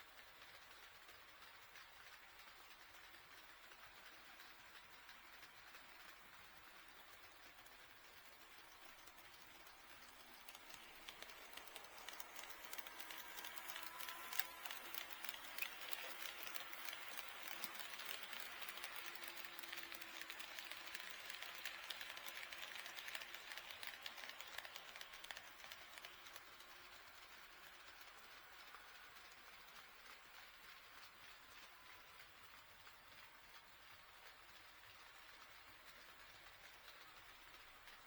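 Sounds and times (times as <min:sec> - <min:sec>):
model train wheels ticking: 0:00.0 - 0:38.0.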